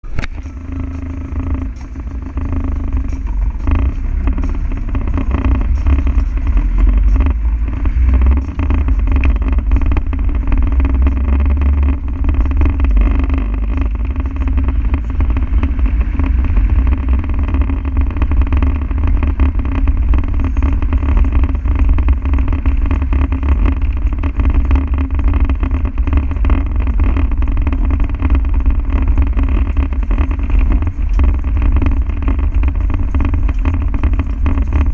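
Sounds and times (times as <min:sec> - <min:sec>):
diesel engine rumbling: 0:00.0 - 0:34.9
road noise: 0:00.0 - 0:34.9.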